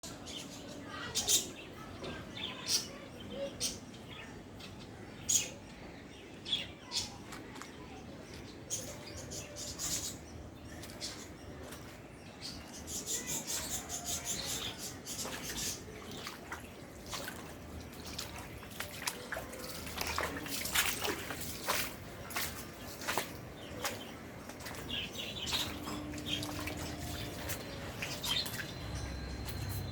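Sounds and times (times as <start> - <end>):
birds chirping: 0.0 - 29.9.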